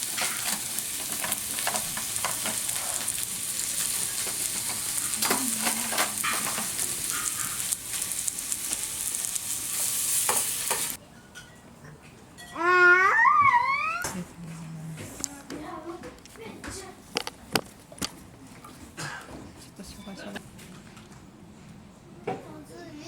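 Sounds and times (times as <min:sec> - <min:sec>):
food sizzling in frying: 0:00.0 - 0:11.0.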